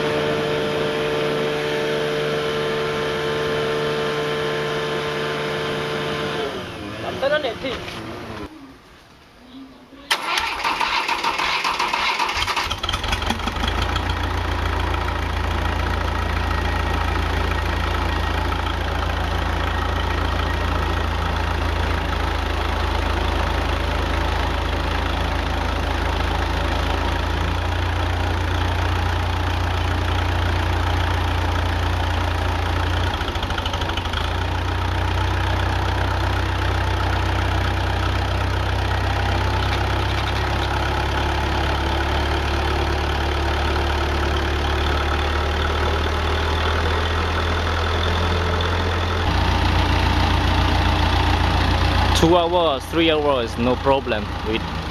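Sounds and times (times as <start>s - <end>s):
diesel generator running: 0.0s - 8.5s, 10.1s - 54.9s.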